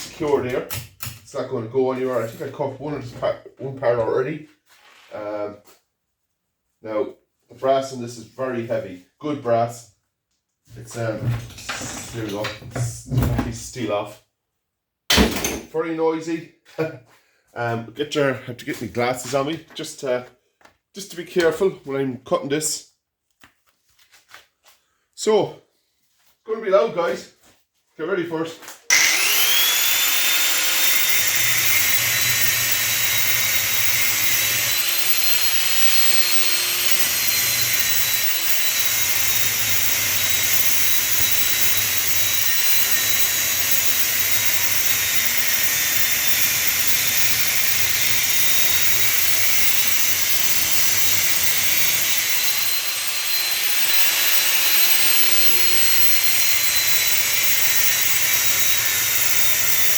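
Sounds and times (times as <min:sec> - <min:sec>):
angle grinder cutting metal: 0:28.9 - 0:59.9.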